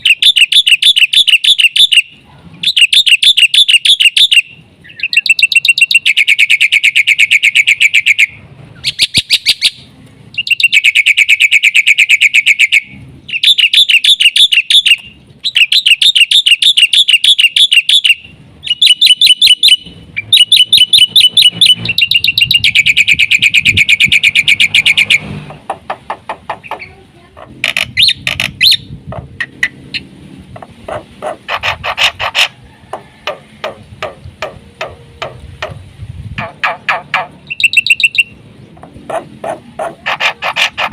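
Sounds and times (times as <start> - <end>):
bird singing high trills: 0.0 - 25.4, 37.4 - 38.4
bird chips and clicks: 0.0 - 32.6, 36.4 - 40.9.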